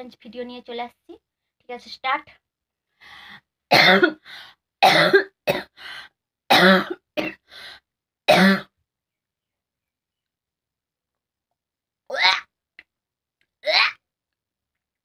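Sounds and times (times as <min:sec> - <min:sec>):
breathy gasps: 0:03.0 - 0:03.5, 0:04.2 - 0:04.6, 0:07.4 - 0:07.9
person coughing: 0:03.7 - 0:04.2, 0:04.8 - 0:05.8, 0:06.5 - 0:07.4, 0:08.3 - 0:08.7.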